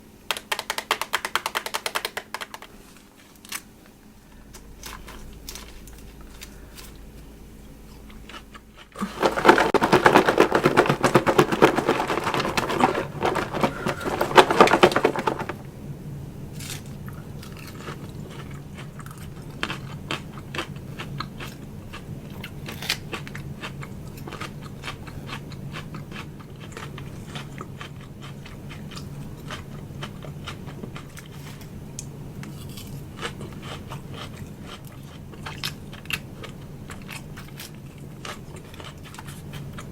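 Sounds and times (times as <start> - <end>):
crunching and chewing lettuce: 2.8 - 15.7, 16.5 - 39.9
steady low hum: 2.8 - 39.9
scraping and rustling: 8.0 - 15.7.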